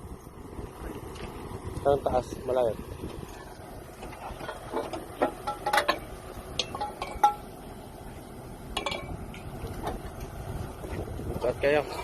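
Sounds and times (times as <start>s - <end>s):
metallic clinks and knocks: 4.3s - 6.0s, 6.6s - 7.5s, 8.8s - 9.2s.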